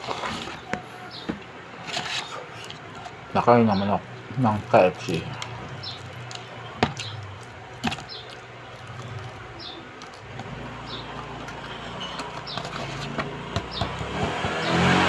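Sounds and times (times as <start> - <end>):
person chewing: 4.1 - 11.8.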